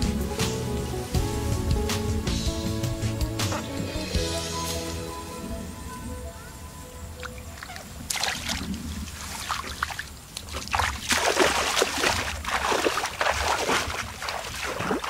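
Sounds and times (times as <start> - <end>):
water splashing and sloshing: 6.9 - 15.0.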